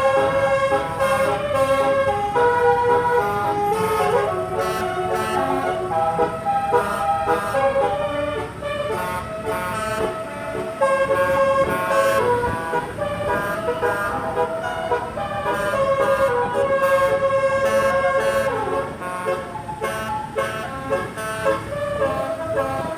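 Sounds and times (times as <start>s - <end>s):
bus horns playing a tune: 0.0s - 22.9s.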